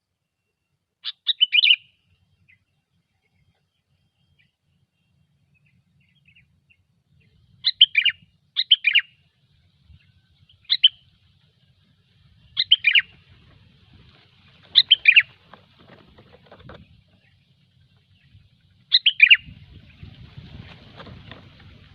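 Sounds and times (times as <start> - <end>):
bulbul singing: 1.0 - 2.7, 3.4 - 9.2, 9.9 - 11.2, 12.4 - 13.3, 14.7 - 15.4, 16.9 - 20.1.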